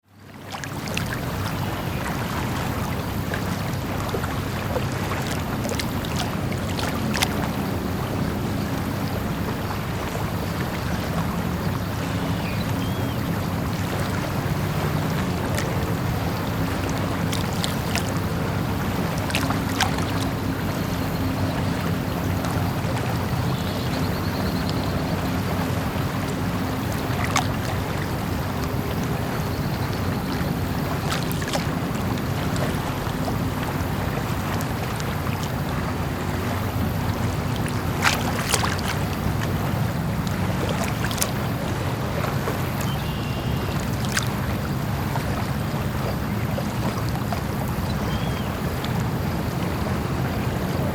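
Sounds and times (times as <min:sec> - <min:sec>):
water noise: 0:00.0 - 0:50.9.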